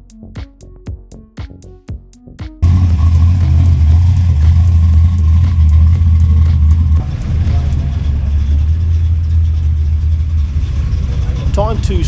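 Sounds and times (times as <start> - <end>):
car engine idling: 2.6 - 12.0.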